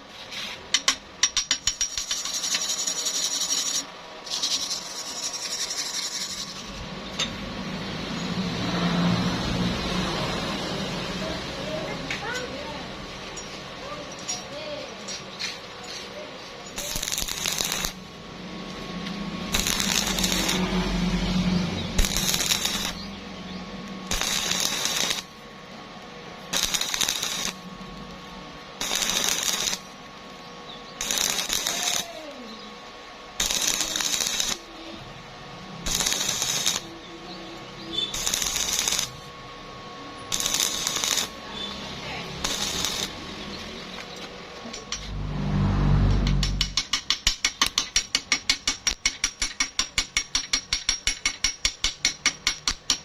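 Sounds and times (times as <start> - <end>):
welding arc crackling: 0.8 - 6.9, 16.0 - 39.4, 40.3 - 44.4.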